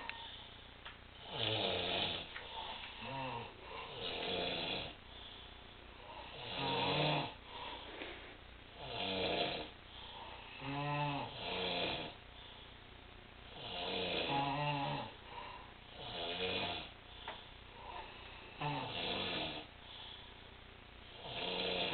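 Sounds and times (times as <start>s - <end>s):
person snoring: 1.2s - 5.0s, 6.0s - 8.2s, 8.8s - 12.2s, 13.5s - 17.0s, 17.8s - 19.7s, 21.1s - 21.9s.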